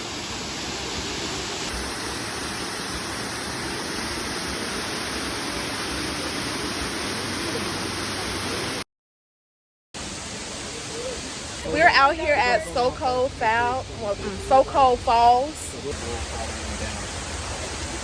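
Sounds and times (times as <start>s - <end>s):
waterfall rushing: 0.0s - 8.8s, 10.0s - 18.0s.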